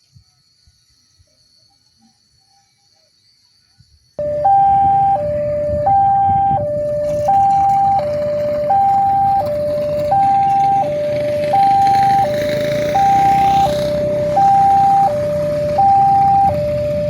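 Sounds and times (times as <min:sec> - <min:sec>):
two-tone level crossing siren: 0:04.2 - 0:17.0.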